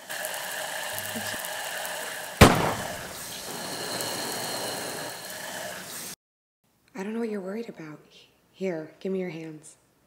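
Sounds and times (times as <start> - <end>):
steady hissing drone: 0.0 - 6.2
sharp loud impact hit: 2.4 - 3.3.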